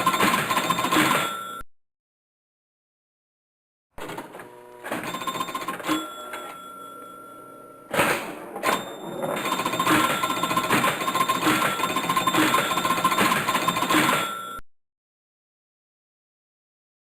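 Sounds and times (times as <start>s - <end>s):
electronic tones and bells: 0.0s - 1.6s, 5.0s - 7.9s, 8.6s - 14.6s
pinball machine clicks and knocks: 5.0s - 6.9s, 7.9s - 14.6s
fast repeating jingle: 8.7s - 14.6s.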